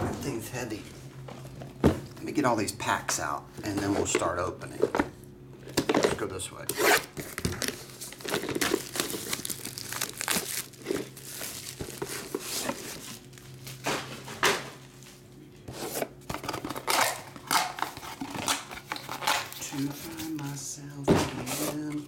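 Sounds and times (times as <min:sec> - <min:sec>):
plastic wrapping crinkling and tearing: 0:07.0 - 0:13.9.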